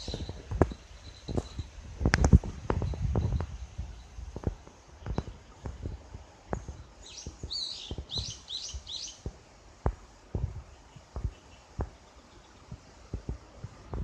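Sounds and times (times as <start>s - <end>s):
small bird chirping: 0.0s - 1.8s, 6.6s - 9.3s
low thumps: 0.0s - 12.0s.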